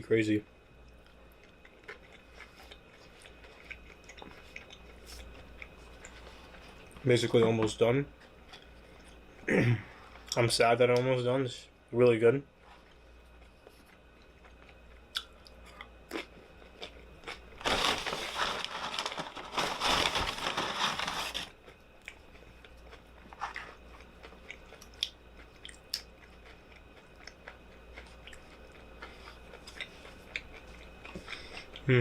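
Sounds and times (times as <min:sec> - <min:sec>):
chewing and eating: 0:00.8 - 0:09.3, 0:12.6 - 0:20.6, 0:21.5 - 0:31.9
loud rustle: 0:17.6 - 0:21.5.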